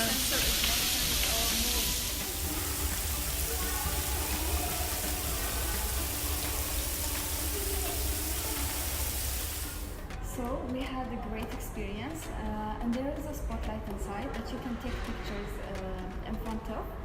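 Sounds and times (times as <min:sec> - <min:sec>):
indoor rain pouring: 0:00.0 - 0:10.2.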